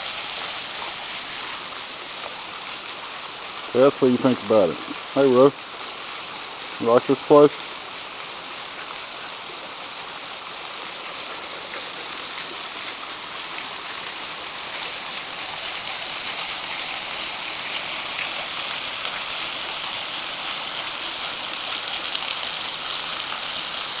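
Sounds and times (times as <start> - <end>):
waterfall splashing: 0.0 - 24.0.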